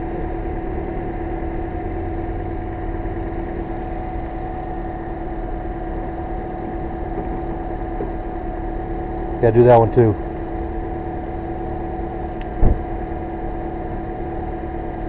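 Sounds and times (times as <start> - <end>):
car engine idling: 0.0 - 15.0
constant tonal whine: 0.0 - 15.0.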